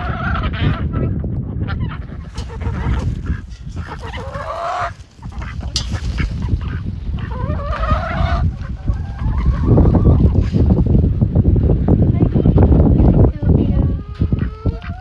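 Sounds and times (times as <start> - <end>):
steady low rumble: 1.4 - 14.0
poultry honking calls: 2.0 - 9.7.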